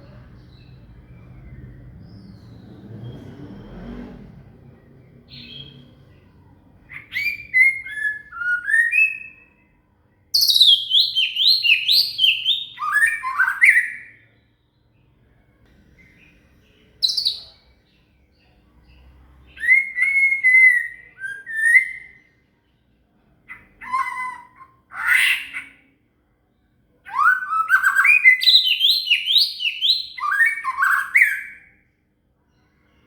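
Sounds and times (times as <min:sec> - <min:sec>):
songbird whistling: 0:06.9 - 0:09.6, 0:10.4 - 0:14.2, 0:17.0 - 0:17.6, 0:19.5 - 0:22.3, 0:27.1 - 0:31.8.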